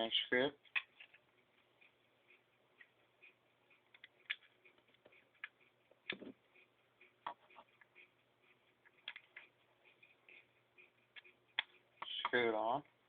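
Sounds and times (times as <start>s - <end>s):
plastic parts clicking and tapping: 3.9s - 6.4s.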